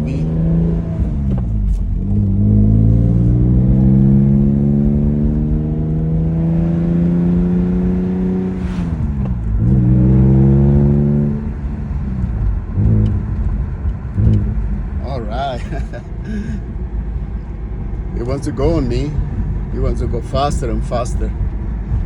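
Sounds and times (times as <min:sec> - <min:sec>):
car engine accelerating: 0:00.0 - 0:22.0.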